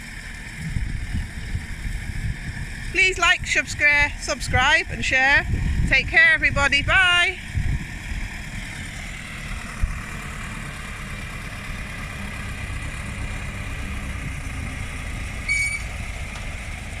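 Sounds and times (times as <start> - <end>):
tractor engine running: 0.0 - 17.0
brief high-pitched tone: 15.4 - 15.9.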